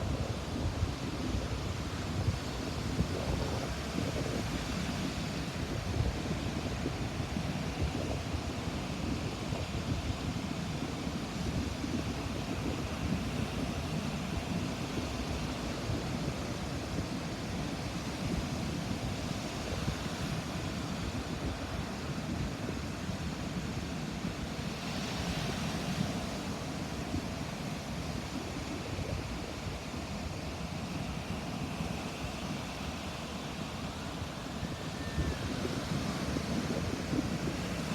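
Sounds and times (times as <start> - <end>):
ocean waves breaking on beach: 0.0 - 37.9.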